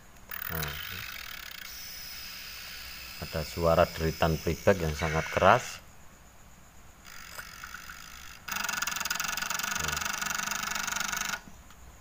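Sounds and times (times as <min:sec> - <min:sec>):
rapid chattering squeal: 0:00.3 - 0:05.8, 0:07.0 - 0:10.1
transformer creaking buzz: 0:00.3 - 0:05.8, 0:07.0 - 0:11.4.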